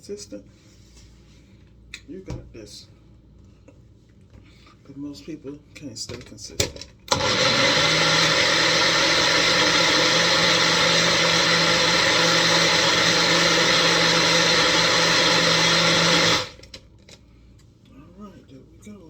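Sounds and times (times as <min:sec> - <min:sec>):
blender motor whirring: 0:07.1 - 0:16.8.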